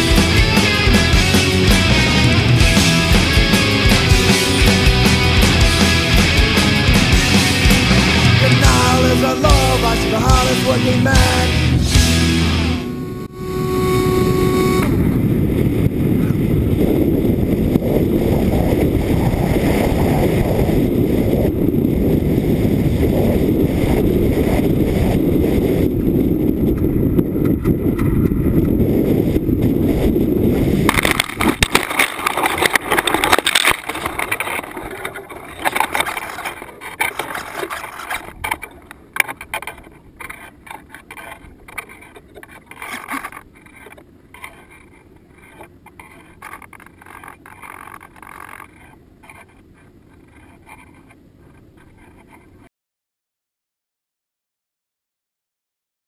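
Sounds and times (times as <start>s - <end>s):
rushing airflow noise: 0.0s - 48.1s
crackling and clicks: 30.8s - 52.7s.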